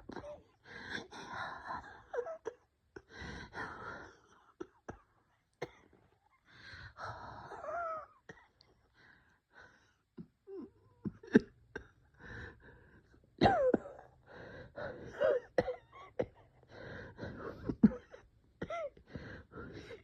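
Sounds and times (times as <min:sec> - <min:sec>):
person coughing: 0:13.4 - 0:14.1.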